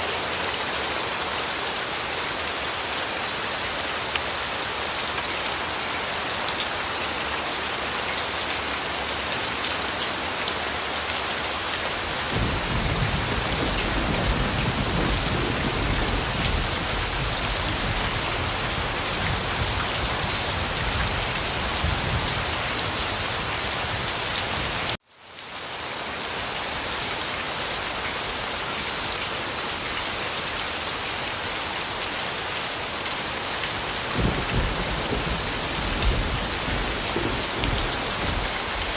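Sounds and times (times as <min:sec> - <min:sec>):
steady rain hiss: 0:00.0 - 0:38.9.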